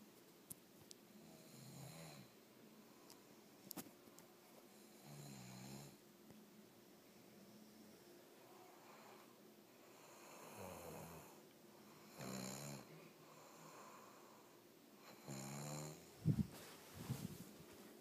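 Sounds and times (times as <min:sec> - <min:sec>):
person snoring: 0:12.1 - 0:14.2, 0:15.0 - 0:16.1.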